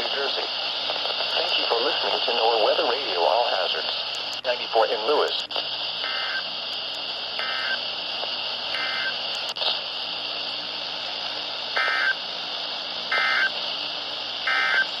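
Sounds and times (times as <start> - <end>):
receiver hiss: 0.0 - 15.0
buzzy two-tone digital chirps: 6.0 - 6.4, 7.4 - 7.8, 8.8 - 9.2, 11.8 - 12.2, 13.1 - 13.5, 14.5 - 14.9.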